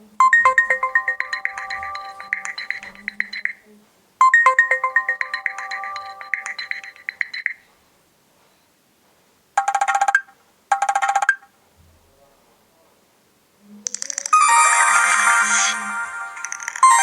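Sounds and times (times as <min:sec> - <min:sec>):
phone ringtone melodies: 0:00.2 - 0:03.6, 0:04.2 - 0:07.6, 0:14.0 - 0:17.0.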